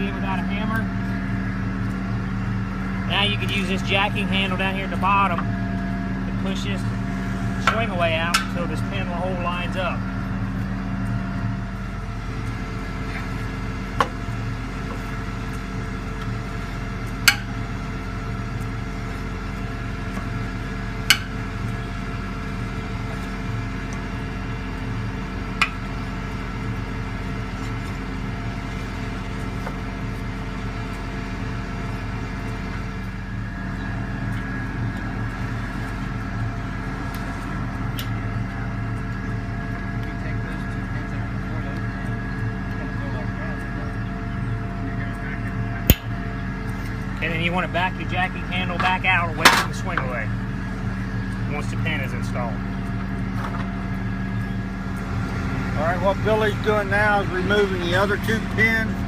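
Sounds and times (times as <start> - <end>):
crane engine idling: 0.0 - 59.0.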